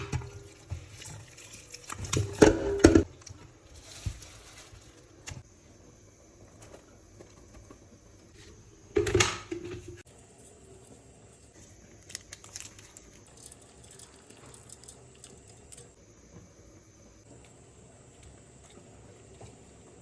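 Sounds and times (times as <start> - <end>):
kitchen knocks and clatter: 1.9 - 3.1.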